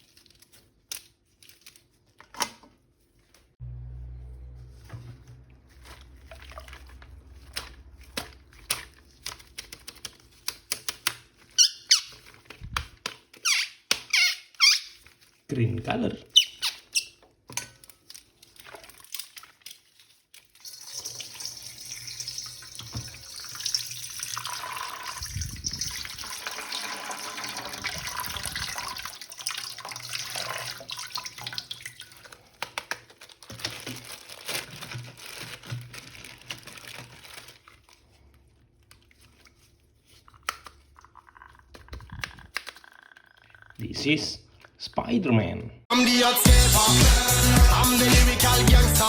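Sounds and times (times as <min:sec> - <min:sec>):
tap water running into sink: 0:20.7 - 0:32.0.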